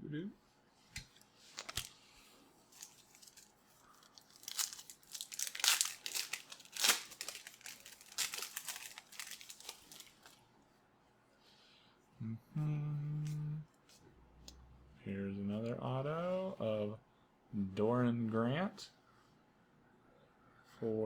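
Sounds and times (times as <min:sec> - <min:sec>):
wrapper tearing and crinkling: 0:01.5 - 0:02.0, 0:02.7 - 0:10.4.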